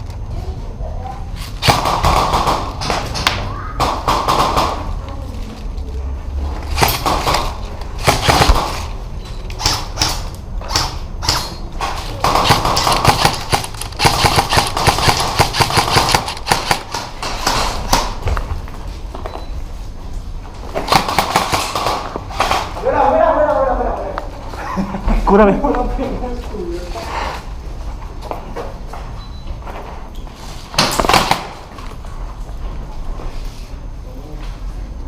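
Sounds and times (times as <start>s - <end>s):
airsoft guns firing: 1.6s - 5.0s, 6.7s - 8.9s, 9.6s - 11.6s, 12.2s - 18.2s, 20.8s - 22.8s, 30.7s - 31.7s.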